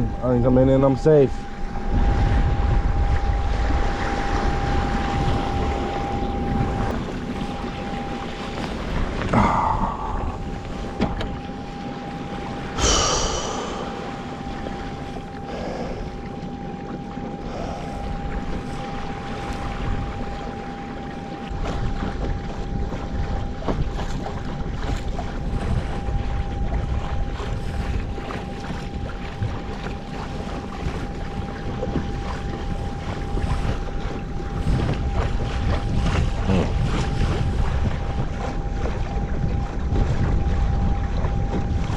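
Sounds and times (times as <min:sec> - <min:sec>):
water sloshing around kayak: 0:00.0 - 0:41.9
wind rumbling on microphone: 0:00.0 - 0:41.9.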